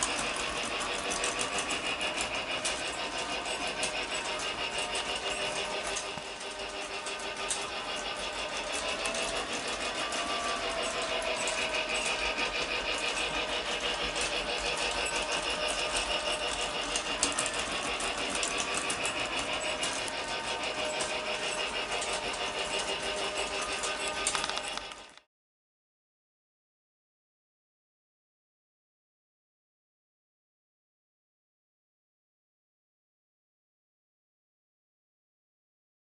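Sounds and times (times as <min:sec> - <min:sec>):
model train clattering on track: 0:00.0 - 0:25.2
motor hum: 0:00.0 - 0:25.2.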